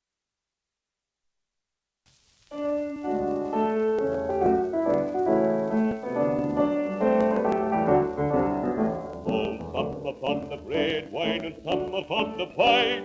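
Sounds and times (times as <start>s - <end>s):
record hiss: 1.2s - 13.0s
piano-led instrumental music: 2.5s - 13.0s
record surface clicks: 3.0s - 12.8s.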